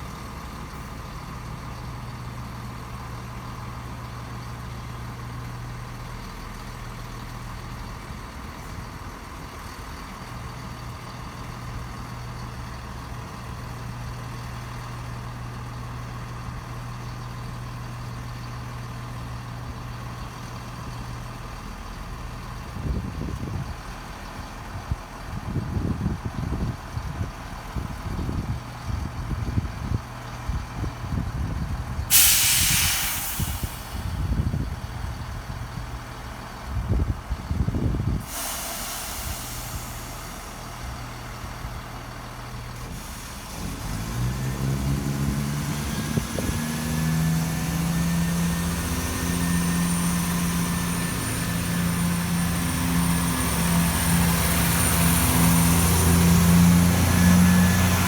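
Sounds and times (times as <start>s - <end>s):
diesel train engine droning: 0.0s - 58.0s
air brakes hissing: 32.1s - 35.1s, 37.8s - 58.0s.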